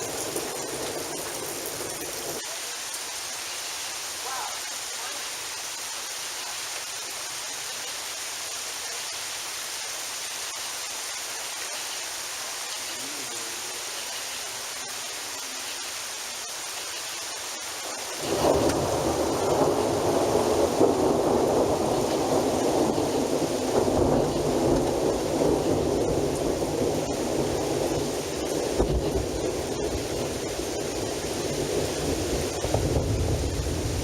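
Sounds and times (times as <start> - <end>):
thunder rumbling: 0.0 - 2.4, 17.8 - 34.0
rain hissing: 0.0 - 34.0.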